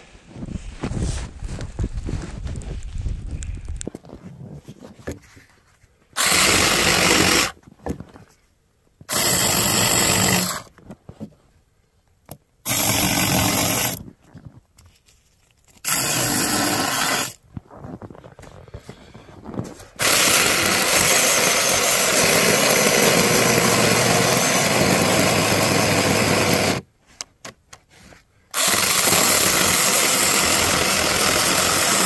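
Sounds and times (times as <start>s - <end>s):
chainsaw cutting firewood: 6.2s - 7.6s, 9.1s - 10.7s, 12.7s - 14.0s, 15.8s - 17.4s, 20.0s - 26.9s, 28.5s - 32.0s.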